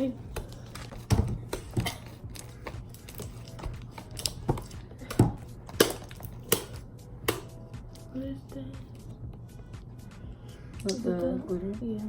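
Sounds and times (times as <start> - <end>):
slime clicking and popping: 3.9 - 7.5.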